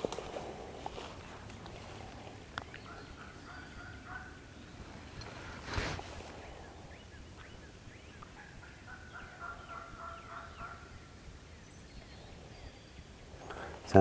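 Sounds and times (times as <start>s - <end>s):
distant turkey gobbling: 1.8s - 5.1s, 8.2s - 11.0s.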